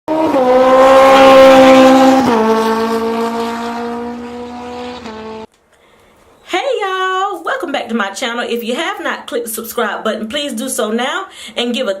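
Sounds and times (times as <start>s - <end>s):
engine at high revs: 0.1s - 5.5s.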